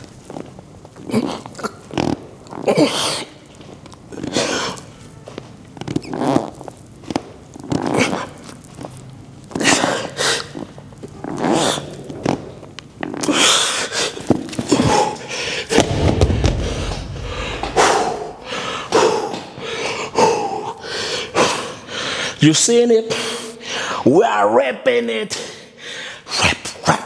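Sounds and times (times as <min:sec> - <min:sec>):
man breathing hard: 0:16.5 - 0:22.4, 0:25.5 - 0:26.3.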